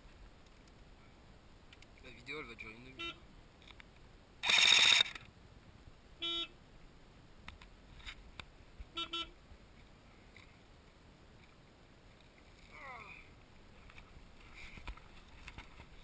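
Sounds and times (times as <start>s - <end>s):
car horn honking: 2.9s - 3.2s, 6.2s - 6.5s, 9.0s - 9.4s.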